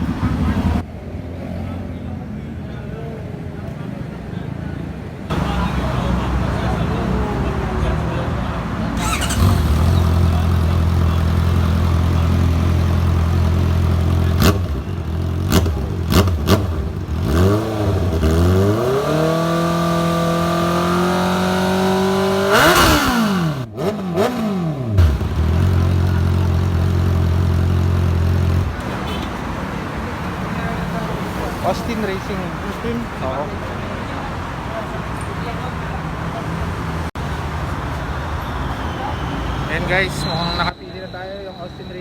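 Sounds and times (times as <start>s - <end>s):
motorcycle engine idling and revving: 0.0s - 2.1s, 5.3s - 33.0s
exhaust cracks: 9.0s - 29.0s.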